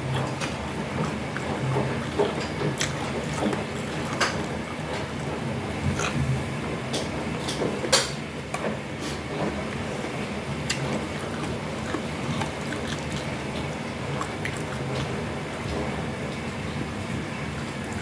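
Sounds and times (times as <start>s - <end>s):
person chewing: 0.0s - 4.8s, 5.8s - 6.5s, 10.6s - 15.2s.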